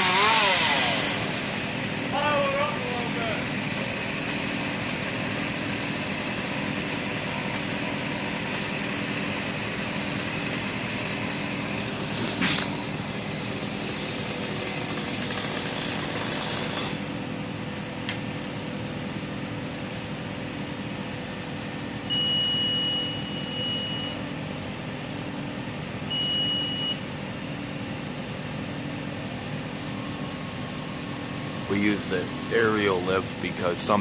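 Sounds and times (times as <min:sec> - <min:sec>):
aerial lift engine running: 0:00.0 - 0:34.0
high steady beep: 0:22.1 - 0:24.2, 0:26.1 - 0:27.0.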